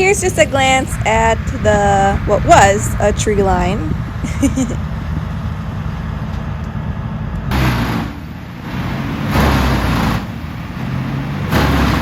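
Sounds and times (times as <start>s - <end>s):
wood chipper engine drone: 0.0s - 12.0s.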